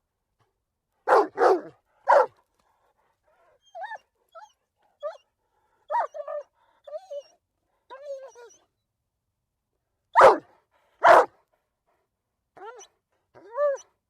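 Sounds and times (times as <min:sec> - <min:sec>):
dog barking: 0:01.0 - 0:02.4, 0:10.1 - 0:11.3
dog whining yelps: 0:03.6 - 0:05.2, 0:05.9 - 0:07.3, 0:07.9 - 0:08.6, 0:12.6 - 0:13.9.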